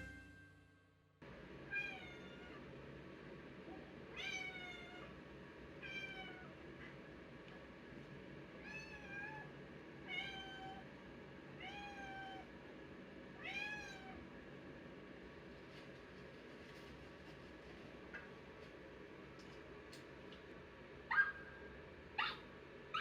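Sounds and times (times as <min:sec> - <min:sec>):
cat meowing: 0:01.7 - 0:02.6, 0:04.1 - 0:05.1, 0:05.8 - 0:06.5, 0:08.6 - 0:09.5, 0:11.6 - 0:12.5, 0:13.4 - 0:14.2.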